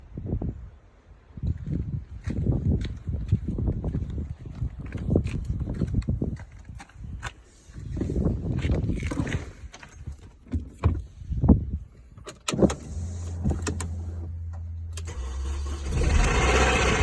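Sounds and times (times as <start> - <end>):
car engine starting: 12.4 - 17.0.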